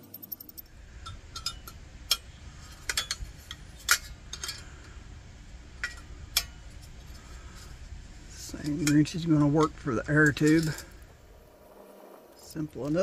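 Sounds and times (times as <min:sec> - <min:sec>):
metal clicks and clinks: 0:00.0 - 0:04.7.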